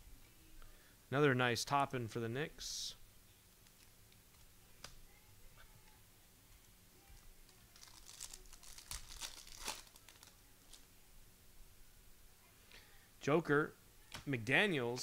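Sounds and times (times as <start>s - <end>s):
plastic wrapper crinkling and tearing: 7.5s - 10.8s.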